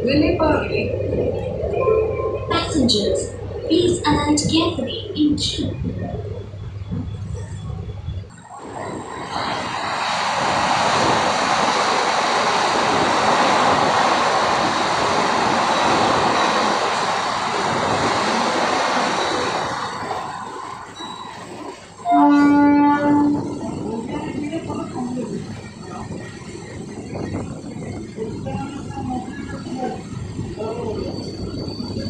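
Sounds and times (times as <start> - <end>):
train rumble and rattle: 0.0 - 32.0
loud pitched tone: 0.5 - 6.2, 21.0 - 24.1
train wheel squeal: 15.4 - 17.3, 19.0 - 32.0.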